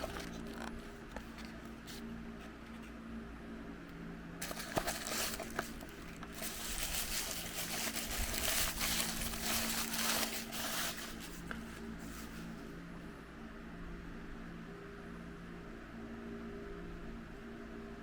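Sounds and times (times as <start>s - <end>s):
plastic wrapper crinkling: 0.0s - 1.6s, 4.4s - 12.4s
faint steady hum: 0.0s - 18.0s.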